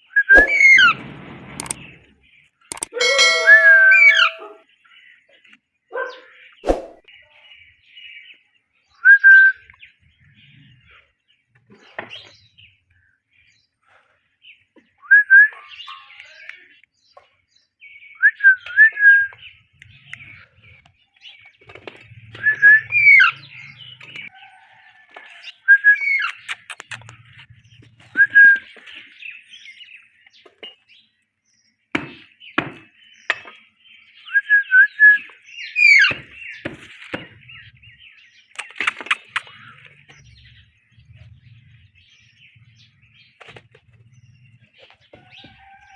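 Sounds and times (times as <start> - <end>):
sharp clicks: 1.6 - 1.8, 2.7 - 3.0, 26.2 - 27.3, 38.5 - 39.9
parrots chirping: 2.7 - 4.6, 26.0 - 27.5.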